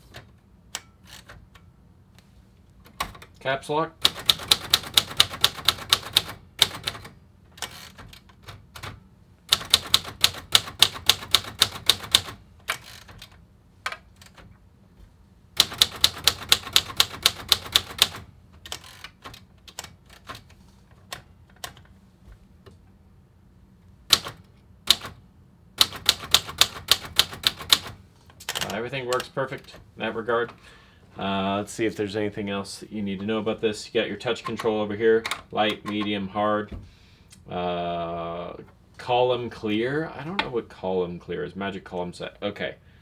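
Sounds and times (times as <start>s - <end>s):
typewriter keystrokes clacking: 4.0s - 14.6s, 15.6s - 21.9s, 24.1s - 25.2s, 25.8s - 29.8s, 34.3s - 36.2s.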